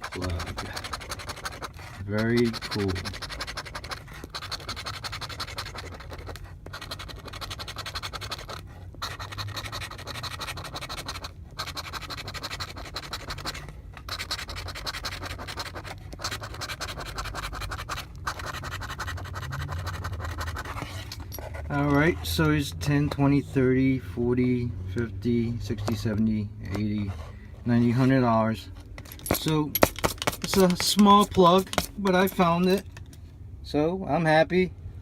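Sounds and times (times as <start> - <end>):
lottery ticket scratching: 0.0 - 23.8, 25.5 - 33.0.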